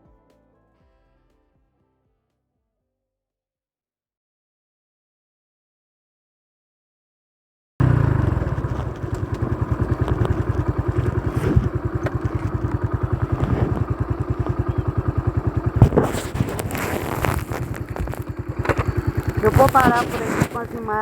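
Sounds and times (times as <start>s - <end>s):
motorcycle engine thumping: 7.8s - 21.0s.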